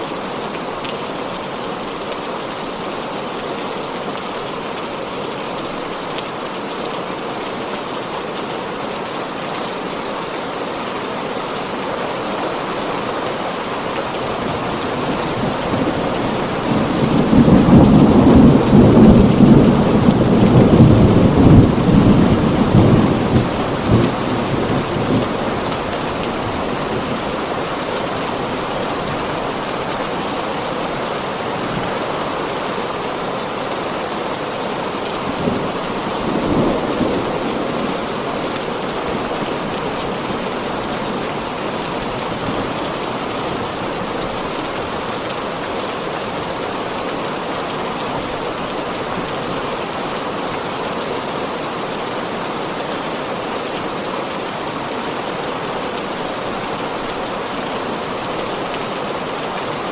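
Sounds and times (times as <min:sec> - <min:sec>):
heavy rain falling: 0:00.0 - 0:59.9
thunder rumbling: 0:14.1 - 0:29.8, 0:35.2 - 0:42.8.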